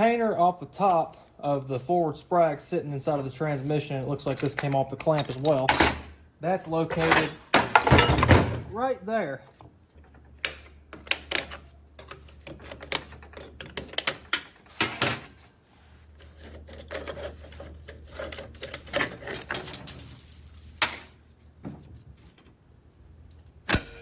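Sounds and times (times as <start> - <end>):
metal parts clinking: 16.2 - 21.2.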